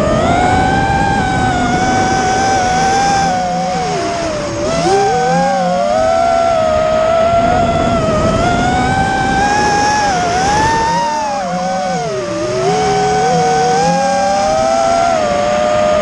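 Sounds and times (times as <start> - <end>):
drone motors whining: 0.0 - 16.0.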